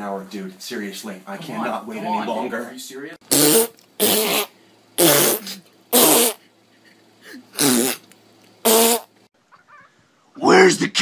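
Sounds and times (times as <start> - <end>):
farting sounds: 3.3 - 6.4, 7.5 - 9.2.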